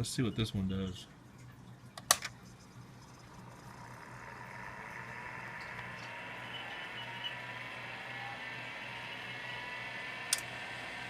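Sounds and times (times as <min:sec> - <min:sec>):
hard drive spinning up: 0:02.8 - 0:11.0.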